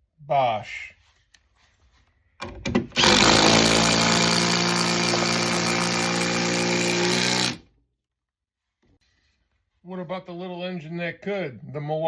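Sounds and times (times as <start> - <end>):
impact driver running: 3.0 - 7.7.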